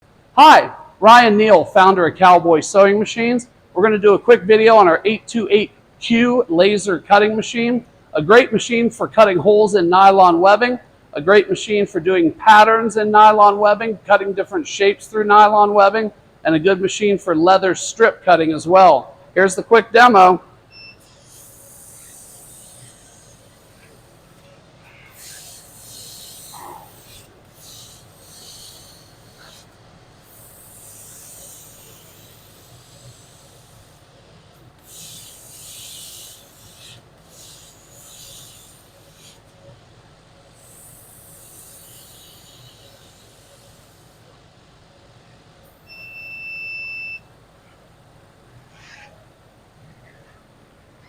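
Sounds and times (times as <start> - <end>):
machine hissing bursts: 20.6 - 39.7, 40.4 - 44.5.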